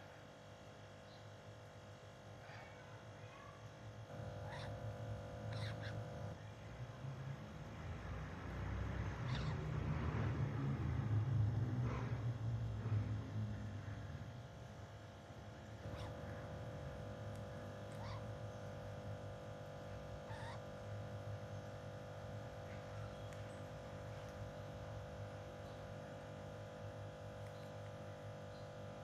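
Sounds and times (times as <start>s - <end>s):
electrical hum: 0.0s - 29.0s
parrot chirping: 4.3s - 6.3s, 9.1s - 9.8s, 15.8s - 16.5s, 17.9s - 18.8s, 20.2s - 20.7s.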